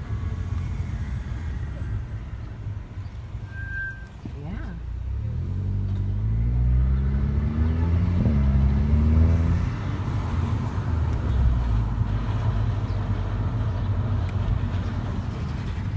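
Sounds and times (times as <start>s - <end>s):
low rumble of moving car: 0.0s - 15.9s
car engine accelerating: 5.1s - 15.2s.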